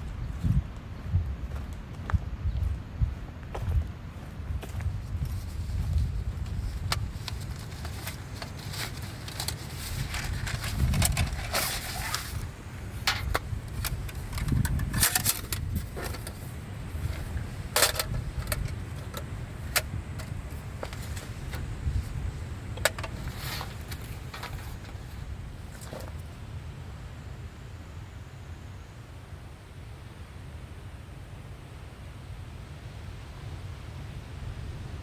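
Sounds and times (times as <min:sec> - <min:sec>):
gear being handled: 0:06.5 - 0:22.2, 0:22.8 - 0:26.2.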